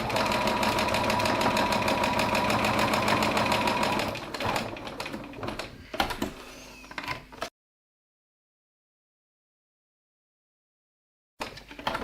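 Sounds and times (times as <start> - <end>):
sewing machine running: 0.0 - 5.6.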